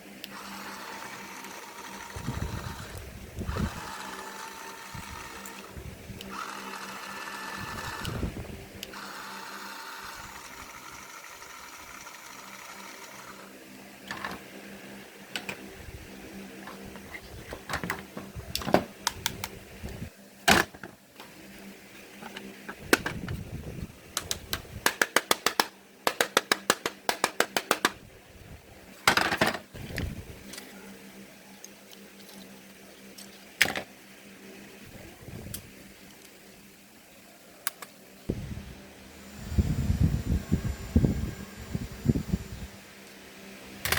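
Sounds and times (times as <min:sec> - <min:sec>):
small electric motor whirring: 0:00.0 - 0:20.1, 0:38.3 - 0:43.9
sharp clicks: 0:24.2 - 0:28.0.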